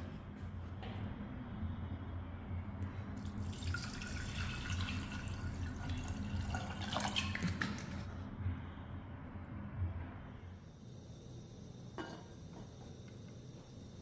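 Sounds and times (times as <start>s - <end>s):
low steady hum: 0.0s - 14.0s
water pouring into container: 3.2s - 8.1s.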